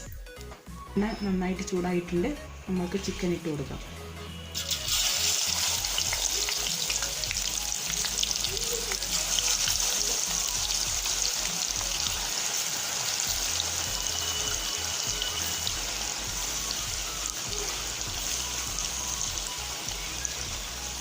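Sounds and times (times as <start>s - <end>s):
background music: 0.0s - 21.0s
chicken sizzling in oil: 4.6s - 21.0s.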